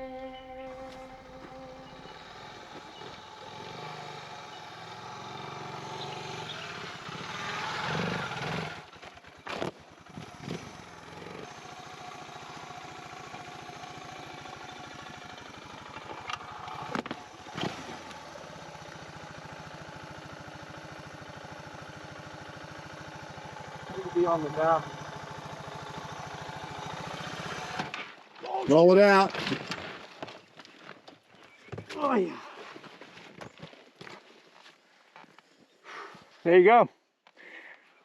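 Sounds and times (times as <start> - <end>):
motorcycle engine revving and idling: 0.0 - 28.0.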